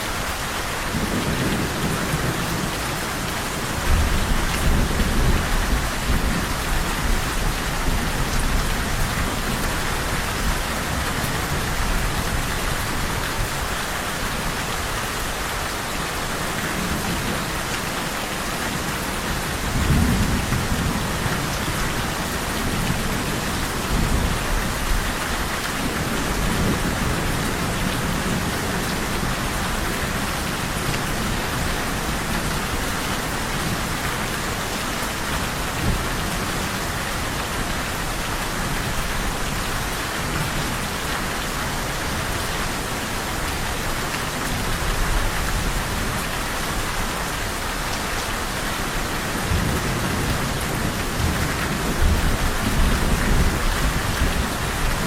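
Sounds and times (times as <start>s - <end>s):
heavy rain hissing: 0.0s - 55.0s
thunder rolling: 49.0s - 55.0s.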